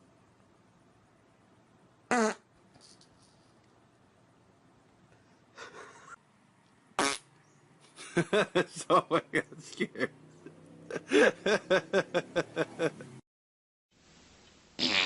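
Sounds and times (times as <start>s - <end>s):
short loud farts: 2.1s - 2.5s, 7.0s - 7.3s, 14.8s - 15.0s.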